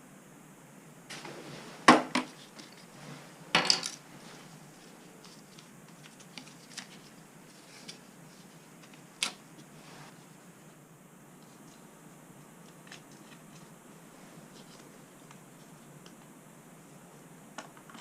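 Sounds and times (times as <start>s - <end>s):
metal tools clinking: 3.6s - 4.0s.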